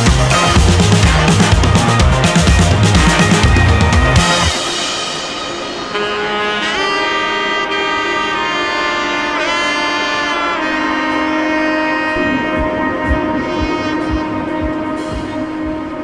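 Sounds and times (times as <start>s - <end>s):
drum-heavy music: 0.0s - 7.0s, 12.0s - 16.0s
held chords: 0.0s - 16.0s
saxophone-like melody: 0.0s - 16.0s.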